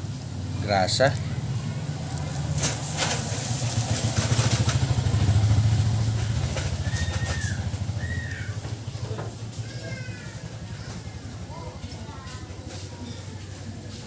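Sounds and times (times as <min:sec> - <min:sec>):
vehicle engine passing by: 0:00.0 - 0:11.9.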